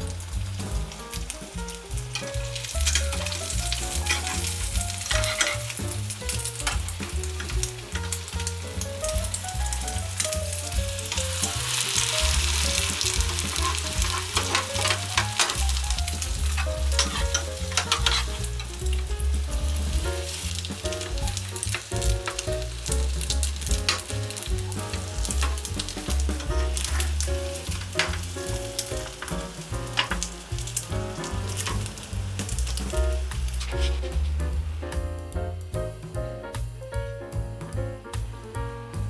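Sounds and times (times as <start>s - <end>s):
egg sizzling in frying pan: 0.0s - 34.9s.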